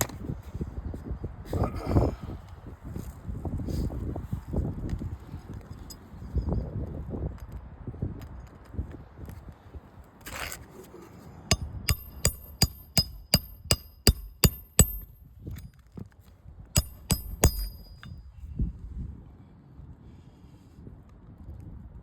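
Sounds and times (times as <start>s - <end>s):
hammer striking roofing nails: 11.5s - 15.2s, 16.8s - 18.1s.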